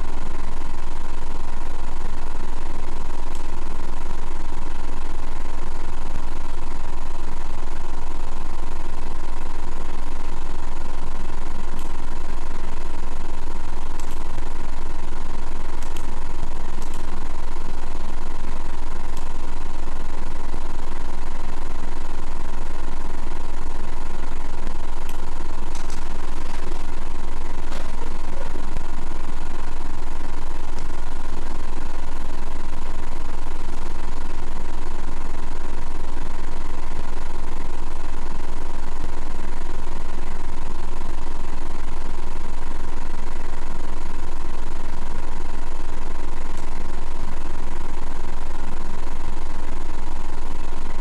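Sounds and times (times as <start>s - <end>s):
faint steady tone: 0.0s - 37.4s
low hum: 0.0s - 41.8s
low-pitched drone: 24.9s - 32.6s.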